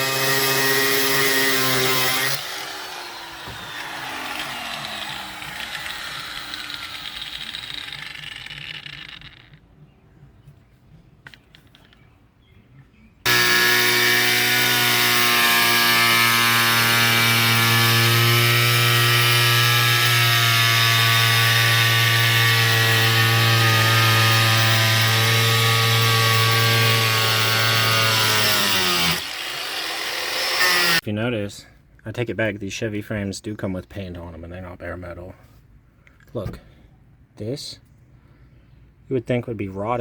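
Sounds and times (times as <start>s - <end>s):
power tool motor whine: 0.0s - 9.4s, 13.3s - 31.0s.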